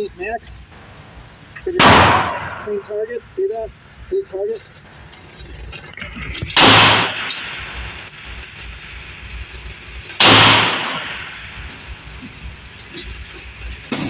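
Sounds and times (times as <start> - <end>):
gunshot echo: 1.8 - 2.9, 6.6 - 8.0, 10.2 - 11.4
pistol shot: 1.8 - 2.9, 6.6 - 7.8, 10.2 - 11.3.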